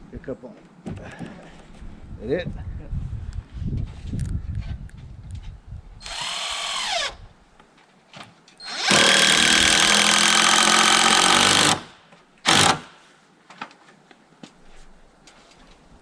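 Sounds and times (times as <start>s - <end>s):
power drill running: 6.0s - 7.2s, 8.6s - 12.9s.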